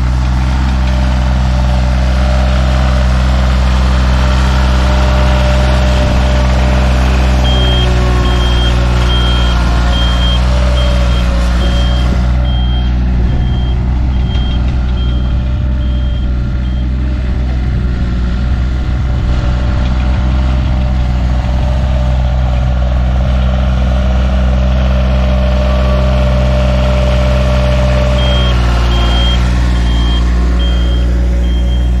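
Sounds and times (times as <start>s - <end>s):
excavator diesel engine running: 0.0s - 32.0s
reversing alarm beeping: 7.4s - 17.0s, 28.1s - 32.0s.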